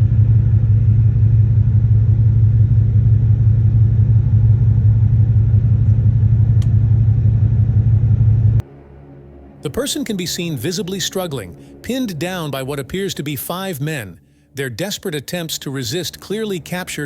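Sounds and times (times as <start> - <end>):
loud low rumble: 0.0 - 8.7.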